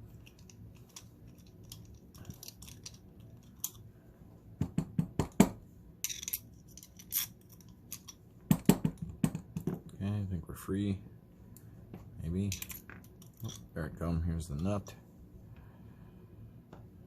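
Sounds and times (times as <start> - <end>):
screwdriver metal clicks and scrapes: 0.2 - 3.8, 6.0 - 8.2.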